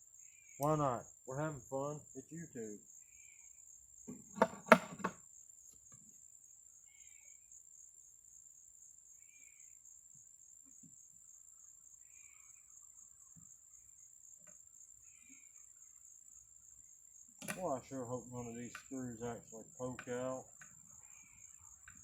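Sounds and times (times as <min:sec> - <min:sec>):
crickets trilling: 0:00.0 - 0:22.0
sharp knocks: 0:04.4 - 0:05.2.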